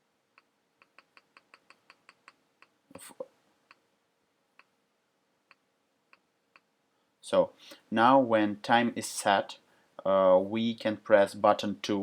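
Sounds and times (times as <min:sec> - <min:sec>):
computer mouse clicking: 0:00.4 - 0:02.8.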